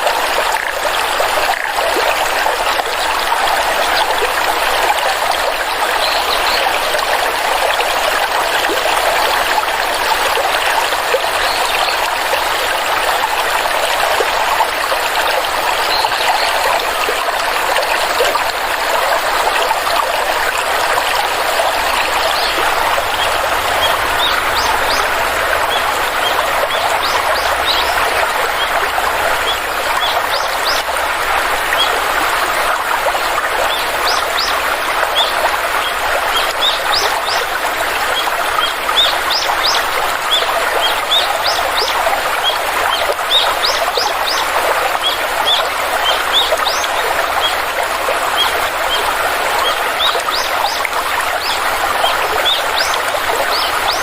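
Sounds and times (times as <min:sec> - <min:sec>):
stream water flowing: 0:00.0 - 0:54.0
small birds chirping: 0:21.6 - 0:28.8.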